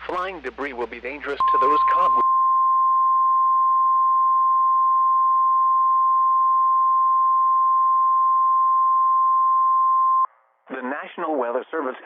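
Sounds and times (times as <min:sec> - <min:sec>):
faint radio hiss: 0:00.0 - 0:02.2
steady high alarm tone: 0:01.4 - 0:10.3.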